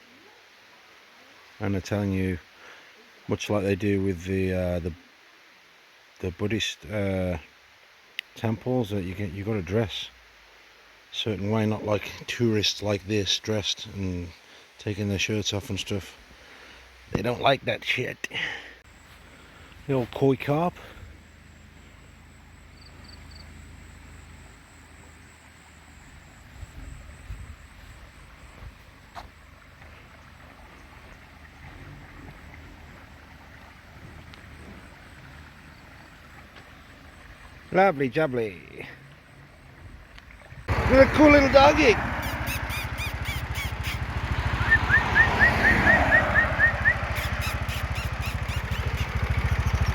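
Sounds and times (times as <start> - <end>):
steady soft hiss: 0.0 - 40.6
small engine idling: 18.8 - 37.6, 40.6 - 49.9
high chirps: 18.9 - 29.6, 40.8 - 49.9
wind rumble on microphone: 26.1 - 29.0.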